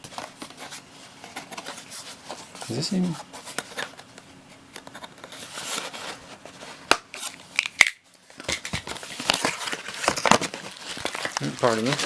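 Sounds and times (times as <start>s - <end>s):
packaging rustling and crinkling: 4.8s - 12.0s.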